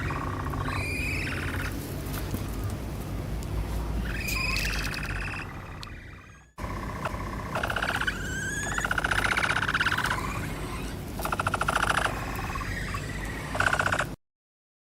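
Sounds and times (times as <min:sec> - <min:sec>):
capybara rising whistle call: 0:00.0 - 0:01.7, 0:04.1 - 0:06.5, 0:07.6 - 0:11.0
capybara rapid clicking calls: 0:00.0 - 0:01.8, 0:04.0 - 0:14.2.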